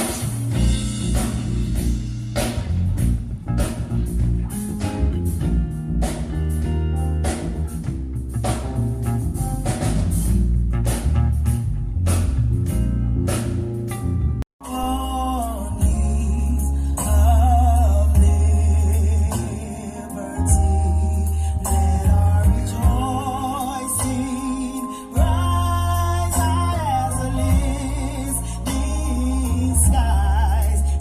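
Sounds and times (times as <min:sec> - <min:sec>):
rock blues band music: 0:00.0 - 0:31.0.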